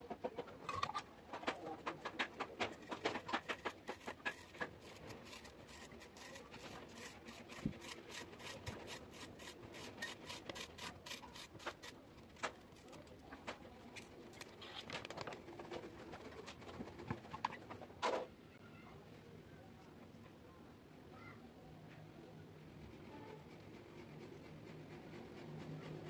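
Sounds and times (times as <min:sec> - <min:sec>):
rapid scraping strokes: 0:01.4 - 0:14.1.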